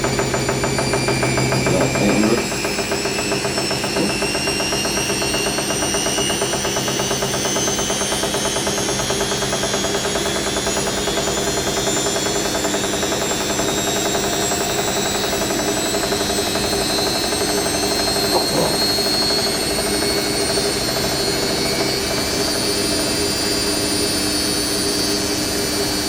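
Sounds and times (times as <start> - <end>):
washing machine motor whining: 0.0 - 26.0
drum pulsing: 0.2 - 5.8, 18.1 - 19.0.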